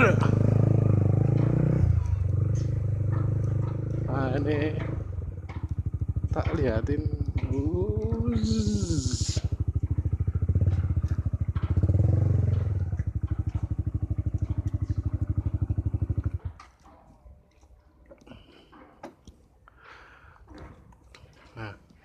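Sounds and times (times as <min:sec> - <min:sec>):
motorcycle engine revving and idling: 0:00.0 - 0:17.1.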